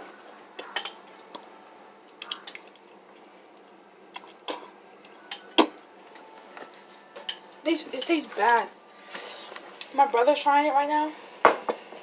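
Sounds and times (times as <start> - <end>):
spoon clinking against bowl: 0.6 - 1.5.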